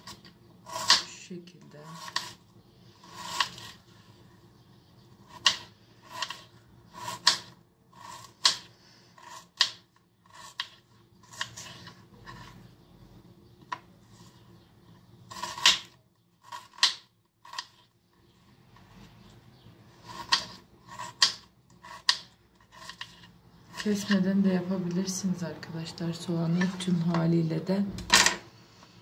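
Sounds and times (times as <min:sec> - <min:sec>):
knife cutting onion on board: 0:00.0 - 0:02.4, 0:05.2 - 0:12.6, 0:15.3 - 0:17.8, 0:20.0 - 0:24.2.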